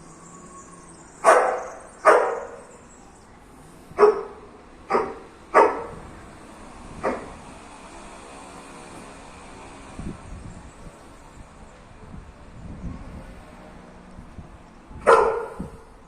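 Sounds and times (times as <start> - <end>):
dog barking: 1.2 - 2.6, 4.0 - 6.0, 15.0 - 15.9.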